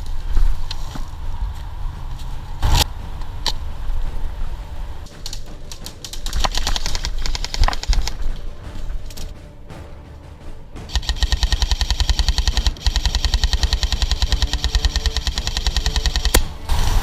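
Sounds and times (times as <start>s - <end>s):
low rumble: 0.0s - 17.0s
airsoft guns firing bursts: 5.1s - 9.5s, 10.9s - 17.0s.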